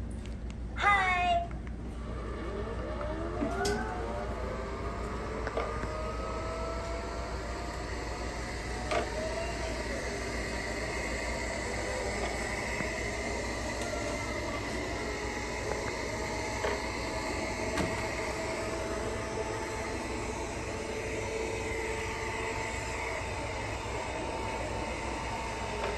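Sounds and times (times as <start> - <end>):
rising whines: 1.7 - 25.9
robot vacuum motor whir: 1.9 - 25.9.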